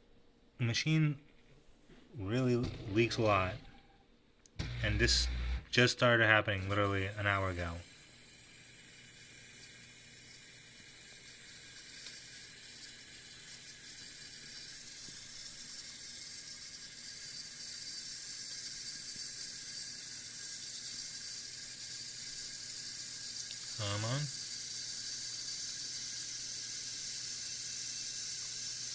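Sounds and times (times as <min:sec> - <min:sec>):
dishwasher filling with water: 0:20.2 - 0:28.9.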